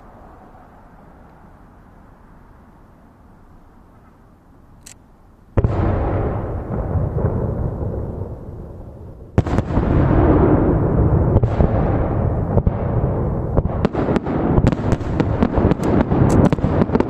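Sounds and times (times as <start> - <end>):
firework shells bursting: 13.8 - 17.0.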